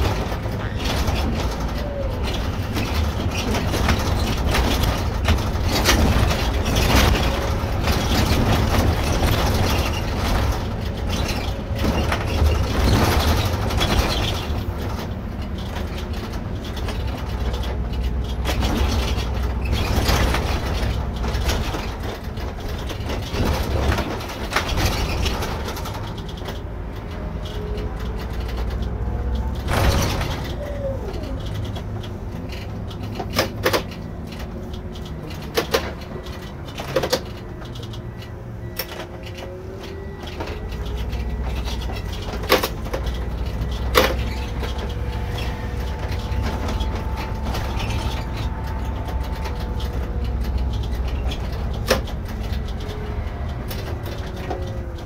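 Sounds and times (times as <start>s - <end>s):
body knocks and rattles: 0.0s - 55.0s
bus engine rumble: 0.0s - 55.0s.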